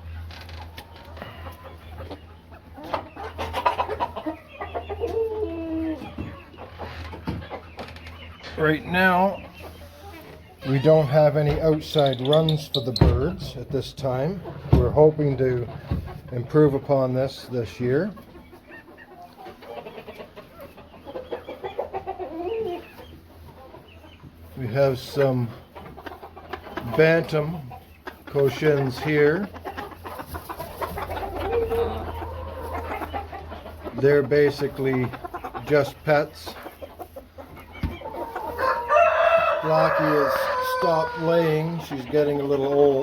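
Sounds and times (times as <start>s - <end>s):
chickens clucking: 0.0s - 43.0s
drawn-out falling chicken call: 29.7s - 33.8s, 37.5s - 41.7s.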